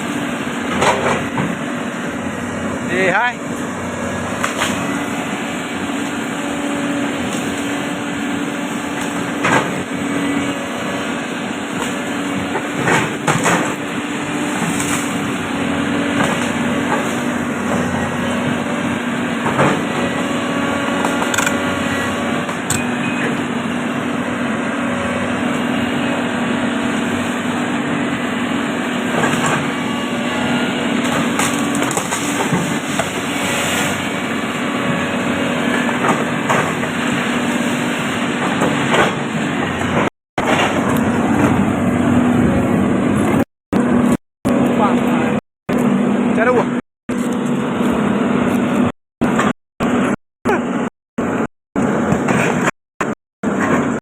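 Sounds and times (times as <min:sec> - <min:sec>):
excavator diesel engine running: 0:00.0 - 0:54.0
sharp knocks and cracks: 0:31.0 - 0:33.2.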